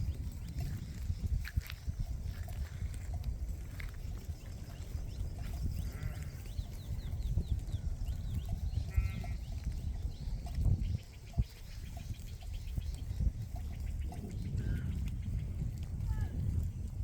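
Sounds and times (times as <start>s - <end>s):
sheep bleating: 5.8s - 6.5s, 8.9s - 9.4s.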